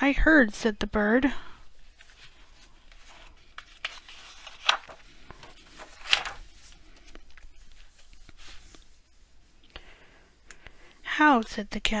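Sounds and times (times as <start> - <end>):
thick paper rustling: 1.8 - 9.0.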